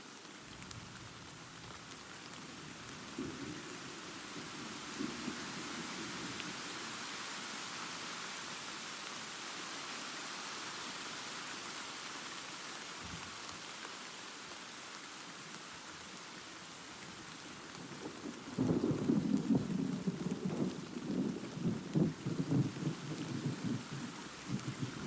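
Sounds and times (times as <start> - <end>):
steady rain: 0.0 - 25.0
low rumble of thunder: 18.0 - 25.0.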